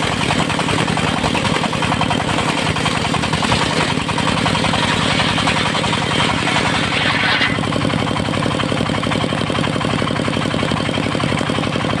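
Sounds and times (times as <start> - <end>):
sawmill engine running: 0.0 - 12.0
saw blade cutting wood: 0.7 - 7.9.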